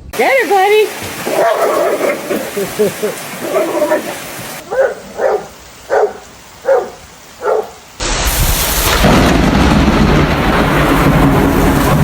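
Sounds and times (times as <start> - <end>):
heavy pouring rain: 0.2 - 12.0
dog barking: 1.3 - 2.3, 3.4 - 7.8
low thunder rumble: 8.0 - 12.0.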